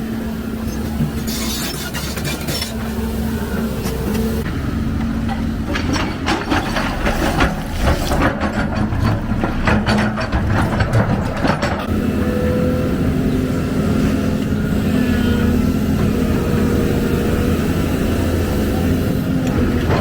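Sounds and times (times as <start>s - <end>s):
excavator diesel engine running: 0.0s - 20.0s
clanks and rattles: 3.8s - 12.0s, 19.4s - 20.0s.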